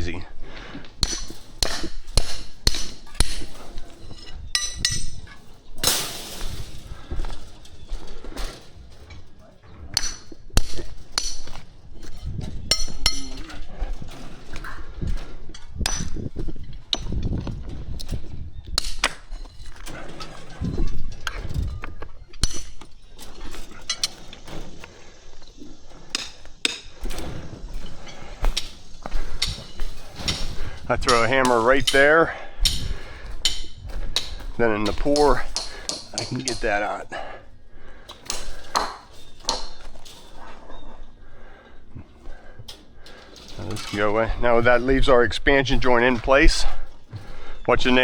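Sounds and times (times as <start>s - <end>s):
hammer striking steel pins: 1.0s - 6.9s, 9.9s - 11.7s, 12.6s - 13.5s, 15.8s - 16.3s, 22.4s - 23.0s, 26.1s - 37.0s, 38.1s - 40.1s.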